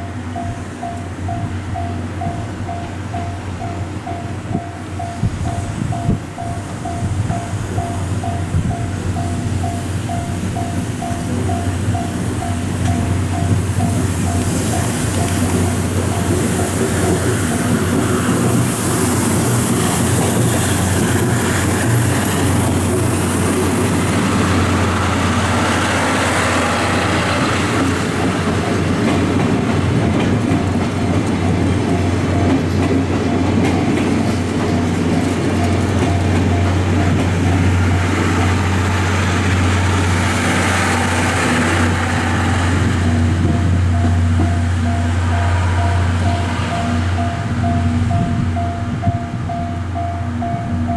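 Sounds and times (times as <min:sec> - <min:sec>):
train wheels clattering on rails: 0:00.0 - 0:50.9
crossing warning signal pulsing: 0:40.0 - 0:50.9.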